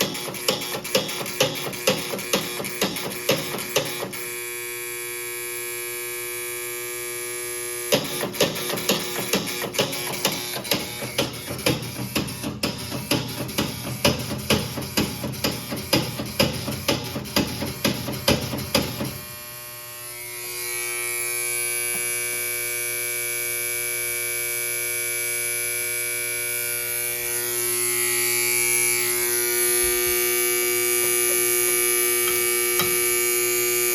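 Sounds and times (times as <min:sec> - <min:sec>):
fire alarm horn buzzing: 0:03.9 - 0:12.4, 0:19.2 - 0:33.9.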